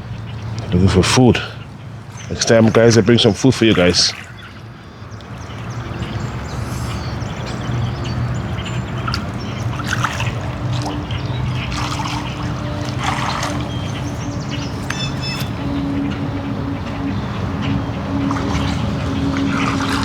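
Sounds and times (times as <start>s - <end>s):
geese calling: 0.0s - 20.0s
low mechanical hum: 0.0s - 20.0s
rushing water: 0.0s - 20.0s.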